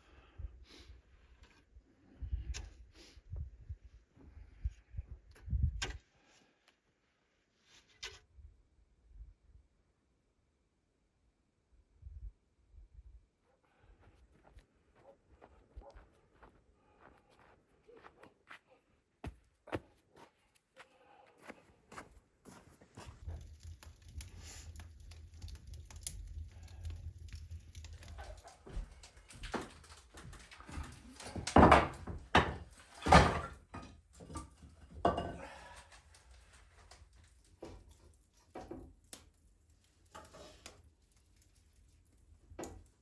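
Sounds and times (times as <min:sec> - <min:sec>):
irregular knocks and thuds: 0:27.8 - 0:35.4.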